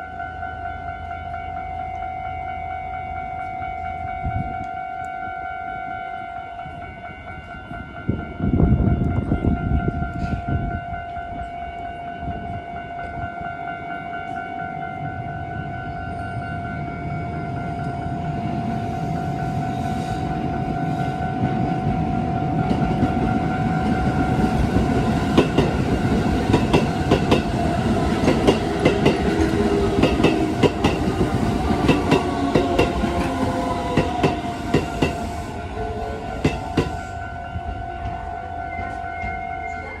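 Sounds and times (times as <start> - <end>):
train rumble: 6.6 - 40.0
level crossing alarm ringing: 11.3 - 40.0
wheels clacking over rail joints: 22.4 - 37.2.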